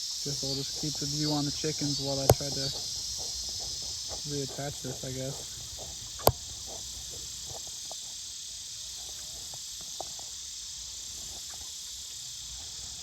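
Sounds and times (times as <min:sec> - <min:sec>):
crickets and insects buzzing: 0:00.0 - 0:13.0
faint clicks: 0:00.3 - 0:08.0.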